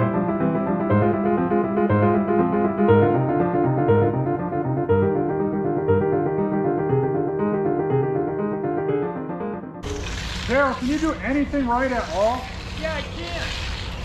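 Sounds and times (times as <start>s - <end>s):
piano music repeated notes: 0.0s - 10.2s.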